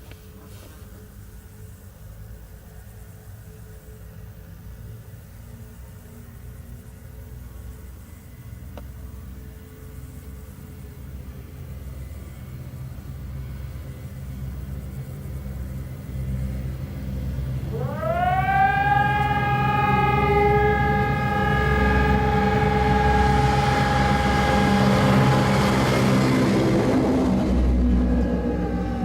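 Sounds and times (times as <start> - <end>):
lower siren tone: 16.1 - 29.0
siren steady tone: 16.6 - 29.0
low rumble: 17.4 - 29.0.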